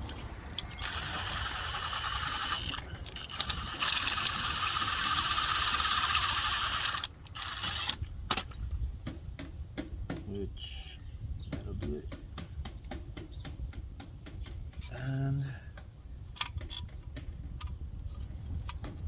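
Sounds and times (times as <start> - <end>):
power drill running: 0.6 - 8.0.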